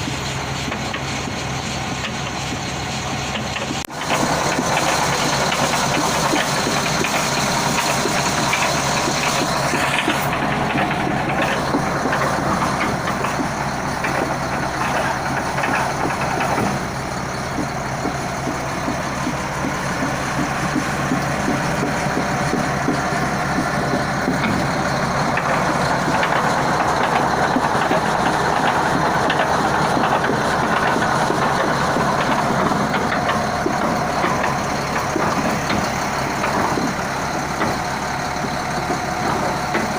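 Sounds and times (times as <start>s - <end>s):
bulldozer running with clattering: 0.0s - 39.9s.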